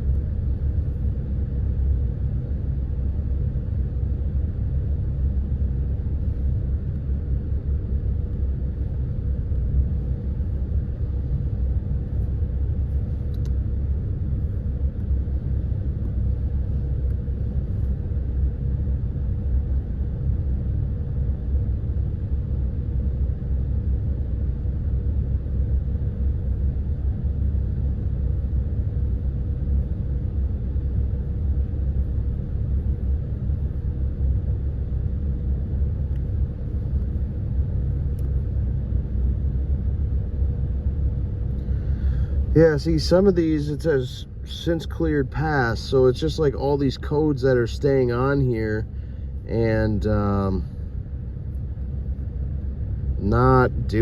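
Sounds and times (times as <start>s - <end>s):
car engine rumble: 0.0s - 54.0s
faint steady whine: 0.0s - 54.0s.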